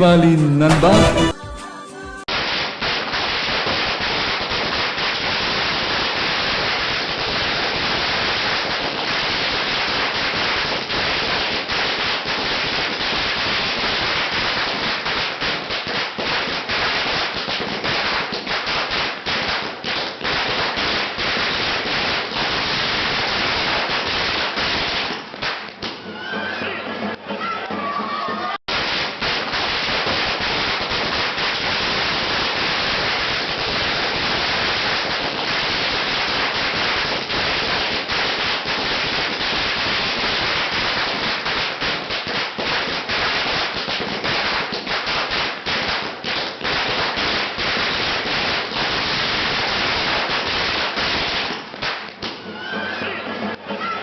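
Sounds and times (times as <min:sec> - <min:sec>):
firecrackers crackling: 0:00.0 - 0:01.5, 0:02.2 - 0:54.0.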